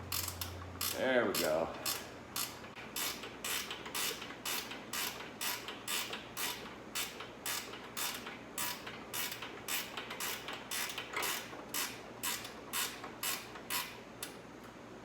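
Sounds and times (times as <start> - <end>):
ratchet wrench clicking: 0.1 - 14.4.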